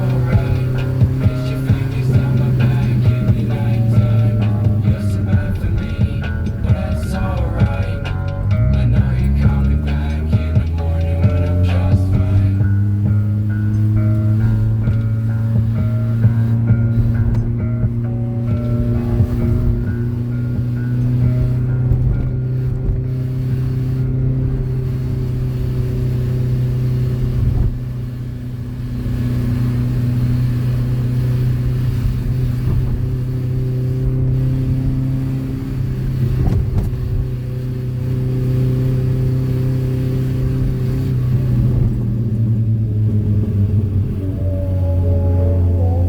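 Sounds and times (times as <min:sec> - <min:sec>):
car engine and exhaust droning: 0:00.0 - 0:46.0.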